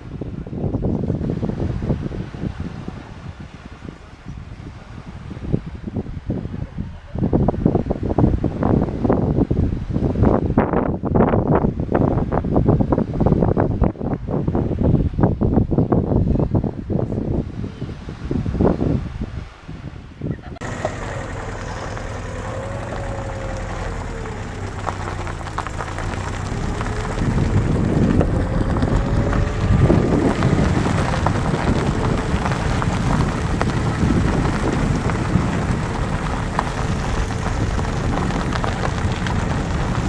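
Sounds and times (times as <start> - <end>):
wind buffeting microphone: 0.0 - 40.0
steady low rumble: 20.4 - 40.0.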